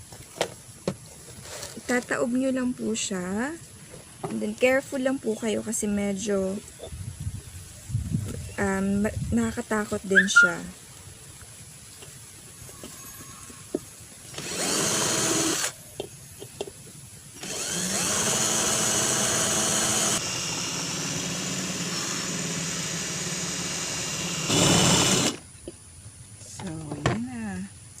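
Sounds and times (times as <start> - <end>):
electric drill boring through pot: 14.3 - 15.8, 17.4 - 25.4.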